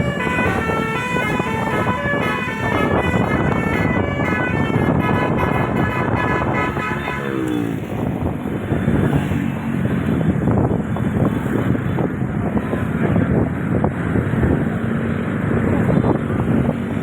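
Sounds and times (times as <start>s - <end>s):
bus air horn tune: 0.0s - 7.8s.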